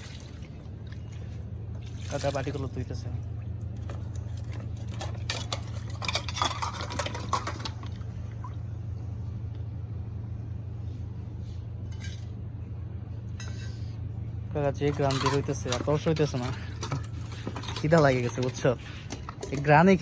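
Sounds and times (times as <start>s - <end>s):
steady low hum: 0.0s - 20.0s
dishes and utensils clinking: 4.8s - 7.9s, 11.9s - 12.3s, 13.4s - 13.9s, 14.8s - 20.0s.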